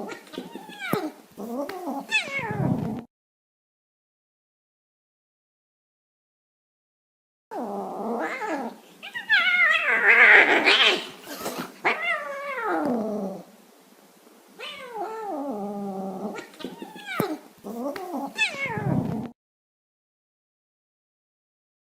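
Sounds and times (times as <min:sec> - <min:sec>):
cats yowling and growling: 0:00.0 - 0:03.0, 0:07.5 - 0:13.5, 0:14.6 - 0:19.3.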